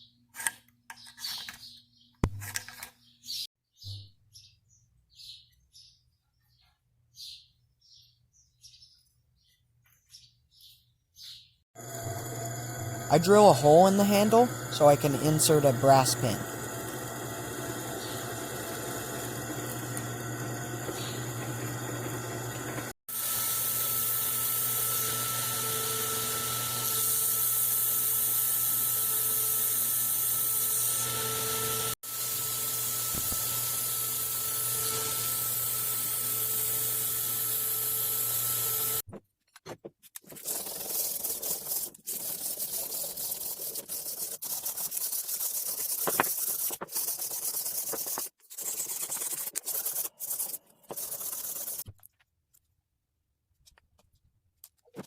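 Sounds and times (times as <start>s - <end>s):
power tool running: 11.8s - 39.0s
scratching rubbing strokes: 40.2s - 51.8s.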